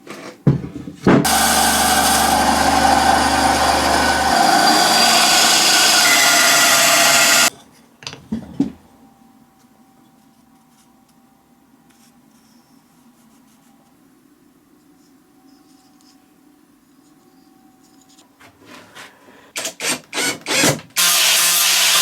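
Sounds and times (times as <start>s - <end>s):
power tool on wood: 1.2s - 7.5s, 20.2s - 22.0s.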